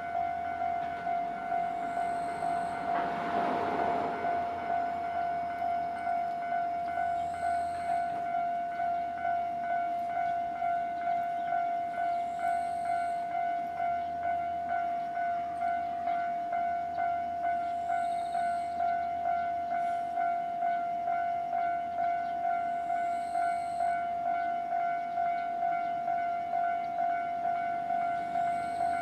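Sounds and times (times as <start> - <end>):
level crossing warning bell clanging: 0.0 - 29.0.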